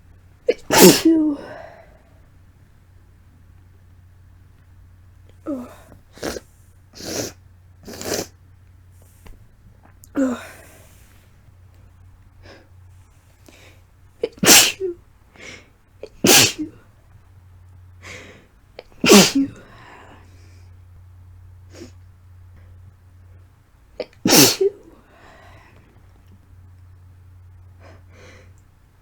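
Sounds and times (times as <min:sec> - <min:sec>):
wet sneezes: 0:00.5 - 0:01.5, 0:05.8 - 0:08.4, 0:14.2 - 0:15.0, 0:16.0 - 0:16.8, 0:18.8 - 0:19.7, 0:24.0 - 0:24.9
sniffing: 0:05.5 - 0:08.4, 0:18.0 - 0:20.7, 0:21.7 - 0:22.0, 0:24.0 - 0:26.0.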